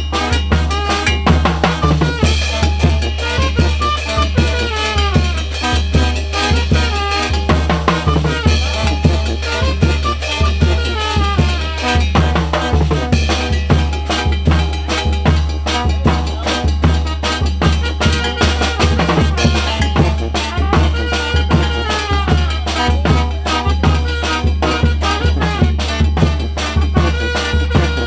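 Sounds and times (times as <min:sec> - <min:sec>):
melody instruments playing: 0:00.0 - 0:25.2
bass line: 0:00.0 - 0:28.0
drum kit dance beat: 0:00.0 - 0:28.0.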